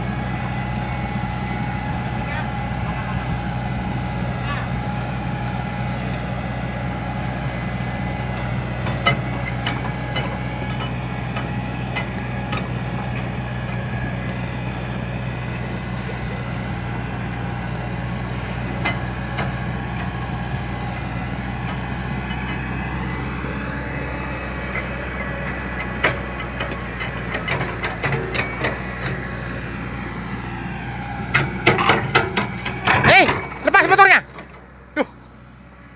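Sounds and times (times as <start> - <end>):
excavator engine humming: 0.0 - 35.9
clicks and knocks: 31.3 - 34.7.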